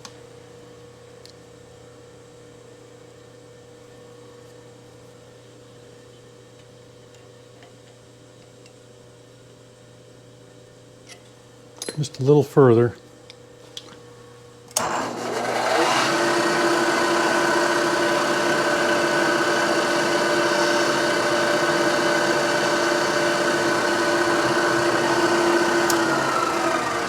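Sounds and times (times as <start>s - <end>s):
electric drill drilling into metal: 14.8s - 27.0s.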